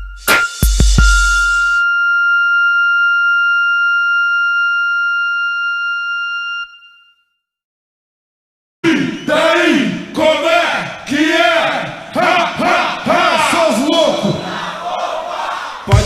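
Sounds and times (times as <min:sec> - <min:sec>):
rap beat kick drum and bass: 0:00.0 - 0:01.8.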